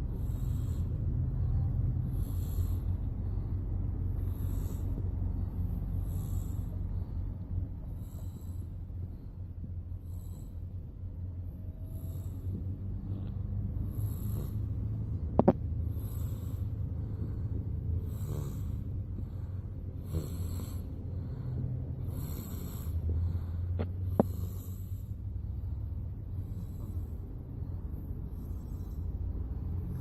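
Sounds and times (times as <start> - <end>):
car rumble: 0.0 - 30.0
baby snoring: 0.1 - 7.2, 11.8 - 25.2, 28.3 - 29.1.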